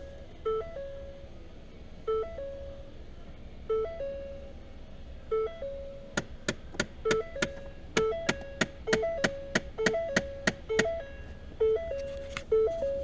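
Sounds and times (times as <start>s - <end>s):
two-note tone: 7.0s - 13.0s.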